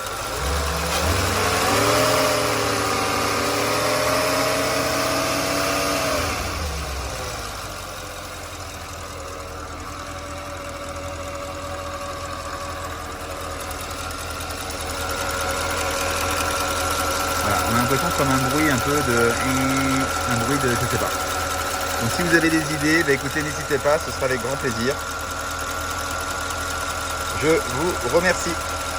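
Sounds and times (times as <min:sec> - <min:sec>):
car engine revving and idling: 0:00.0 - 0:28.9
turbine-like engine whine: 0:00.2 - 0:07.8.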